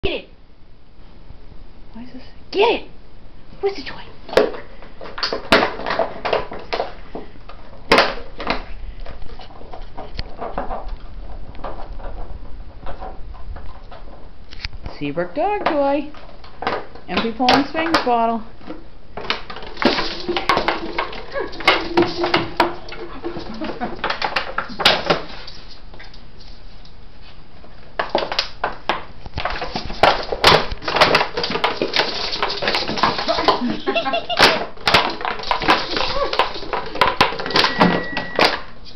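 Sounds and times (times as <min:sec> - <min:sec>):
plastic bottle crinkling: 0:19.1 - 0:25.8, 0:28.0 - 0:38.6.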